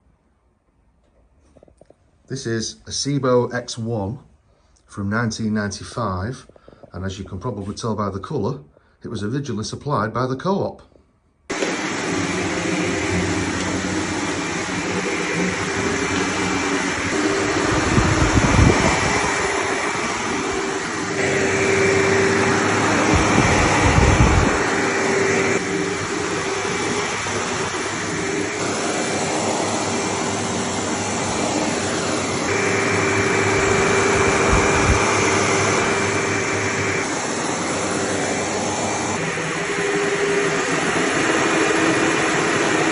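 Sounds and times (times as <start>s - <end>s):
upright vacuum cleaner running: 11.5s - 42.9s.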